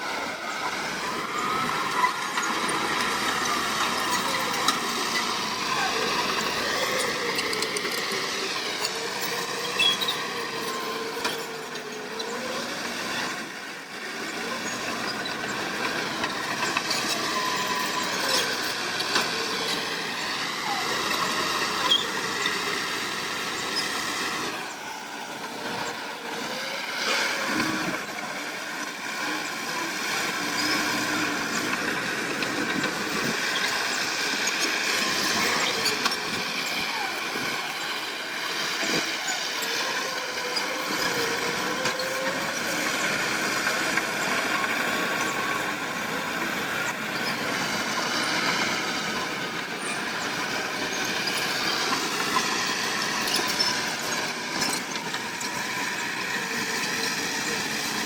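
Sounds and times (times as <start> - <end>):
heavy diesel engines working: 0.0 - 58.0.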